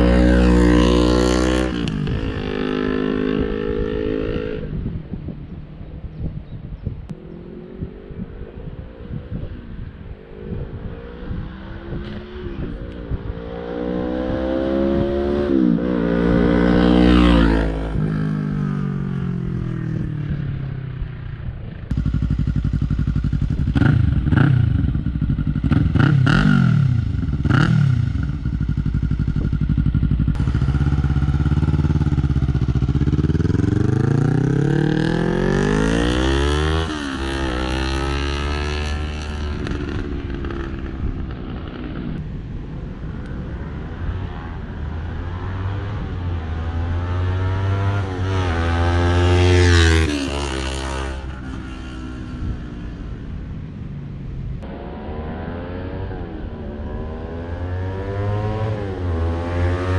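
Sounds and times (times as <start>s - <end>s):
motorcycle engine revving: 0.0s - 5.0s, 21.8s - 42.2s, 44.2s - 53.5s, 54.6s - 59.9s.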